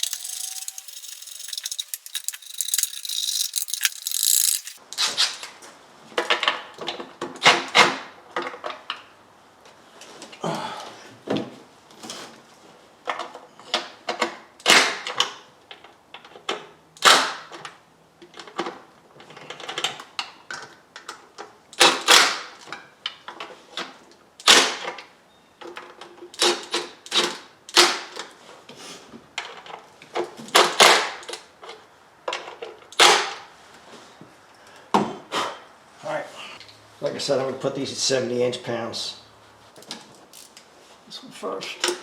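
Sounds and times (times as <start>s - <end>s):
metallic clicks of hand tools: 0.0s - 4.8s.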